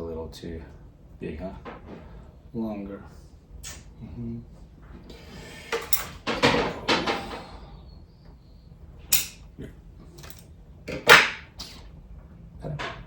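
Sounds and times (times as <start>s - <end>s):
wire and hand tools clacking: 9.1s - 9.5s, 10.1s - 11.4s.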